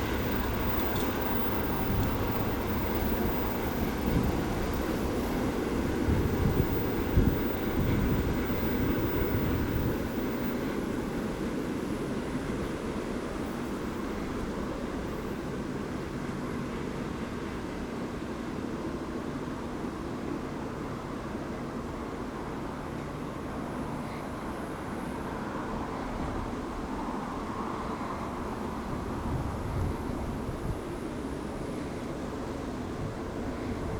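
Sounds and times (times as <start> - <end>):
train knock: 0.0 - 11.0
freight train wagons rumbling: 0.0 - 18.1.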